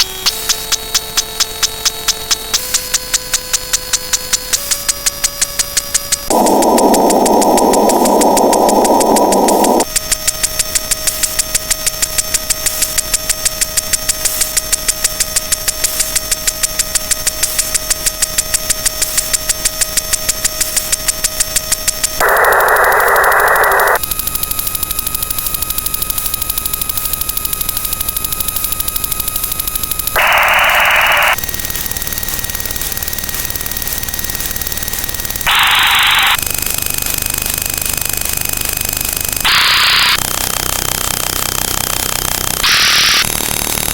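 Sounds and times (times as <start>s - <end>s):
fast ticking pulse: 0.0s - 43.9s
bursts of filtered hiss: 6.3s - 9.8s, 30.2s - 31.4s, 35.5s - 36.4s
steady electronic tones: 6.3s - 10.0s, 22.2s - 24.0s, 30.2s - 36.5s, 39.5s - 40.3s.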